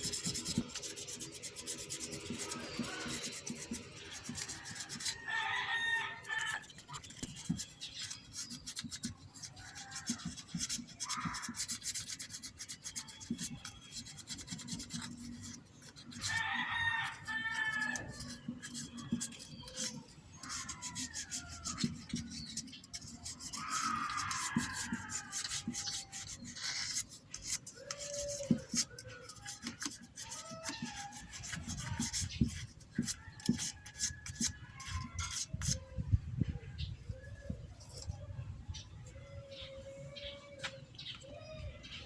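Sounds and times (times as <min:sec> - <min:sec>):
sandpaper rubbing metal: 0:00.0 - 0:05.3, 0:06.0 - 0:35.9
rooster crowing: 0:04.7 - 0:06.7, 0:16.2 - 0:18.3.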